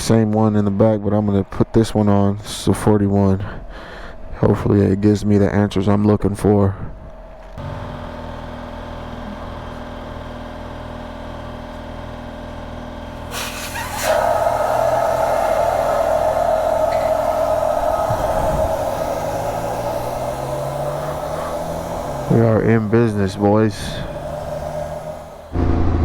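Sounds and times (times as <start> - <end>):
low mechanical hum: 3.3 - 26.0
machine motor whining: 13.2 - 26.0.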